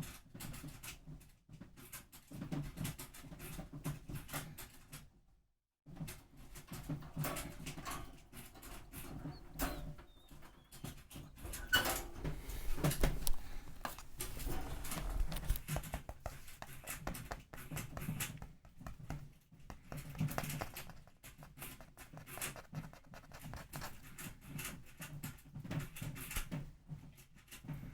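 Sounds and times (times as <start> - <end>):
degu nibbling: 8.7 - 24.2
faint short animal calls: 9.1 - 11.9.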